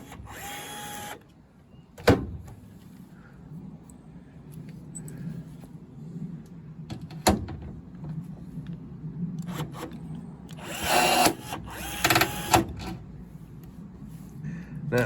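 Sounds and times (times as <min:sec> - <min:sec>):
electric drill drilling metal: 0:00.0 - 0:01.2, 0:10.6 - 0:12.6.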